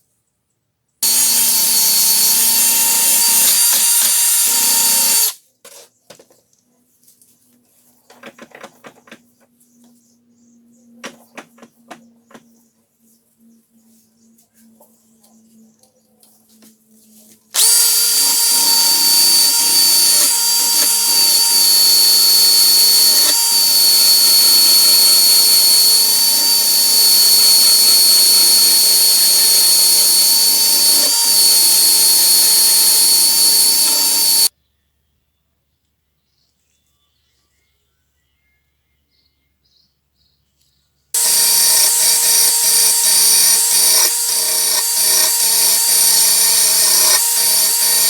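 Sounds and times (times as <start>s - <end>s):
power tool whining: 1.0s - 5.4s, 17.6s - 34.5s, 41.2s - 48.0s.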